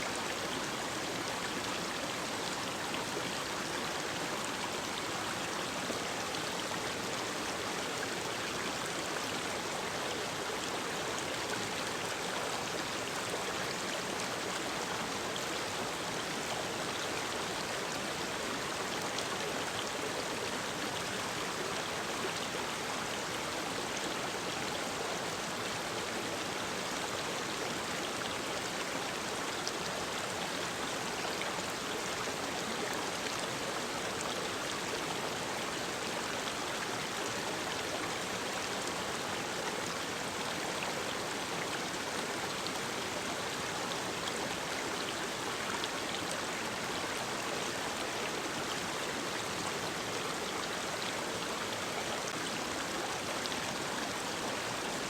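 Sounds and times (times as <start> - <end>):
stream running over rocks: 0.0 - 55.0.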